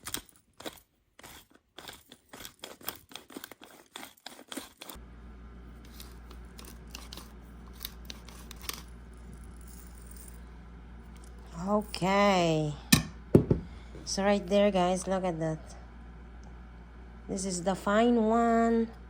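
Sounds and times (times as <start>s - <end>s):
pepper grinder crunching: 0.0s - 5.0s, 5.8s - 10.4s
steady low hum: 5.0s - 19.0s.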